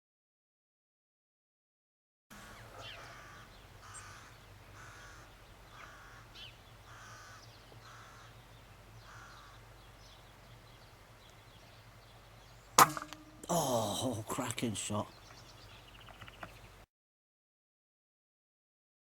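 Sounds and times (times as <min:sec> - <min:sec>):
corvids cawing: 0:02.3 - 0:16.8.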